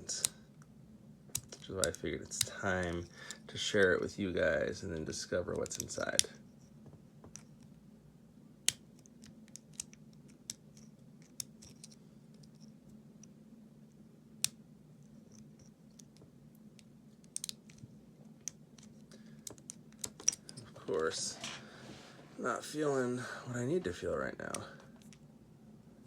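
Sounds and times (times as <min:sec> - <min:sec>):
low steady hum: 0:00.0 - 0:26.0
lock pick metallic clicks: 0:08.6 - 0:13.3, 0:17.2 - 0:17.8, 0:18.4 - 0:20.6.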